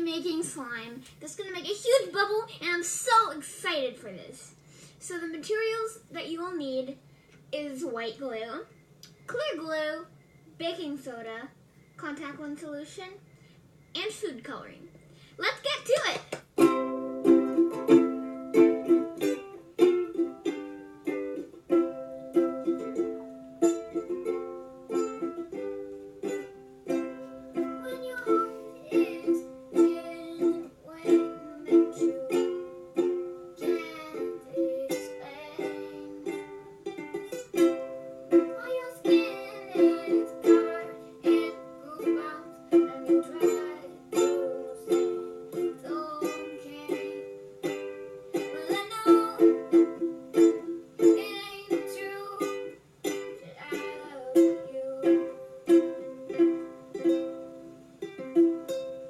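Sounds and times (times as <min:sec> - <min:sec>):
upbeat strummed ukulele tune: 0:15.8 - 0:59.0.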